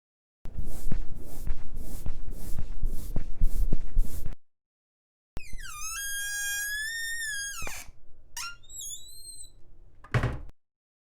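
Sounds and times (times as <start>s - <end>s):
high squeak: 5.4s - 9.6s.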